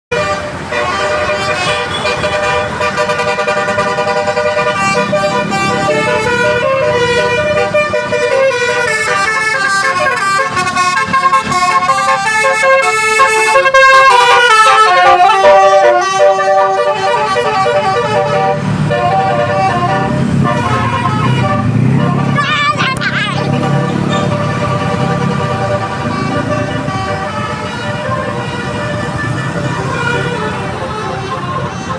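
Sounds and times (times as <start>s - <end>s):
multi-tone musical bus horn: 0.1s - 31.9s.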